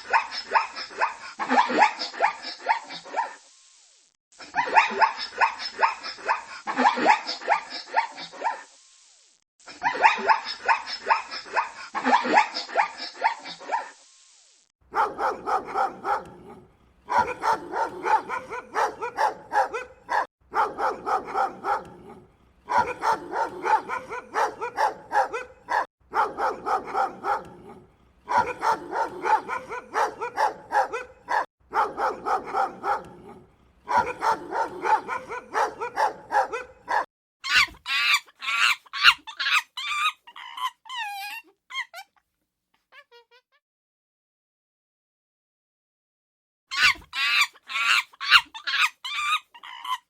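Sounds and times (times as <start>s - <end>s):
dog barking: 0.0s - 3.4s, 4.6s - 8.7s, 9.8s - 14.0s, 14.9s - 40.1s, 46.7s - 50.0s
high wavering animal calls: 46.7s - 50.0s.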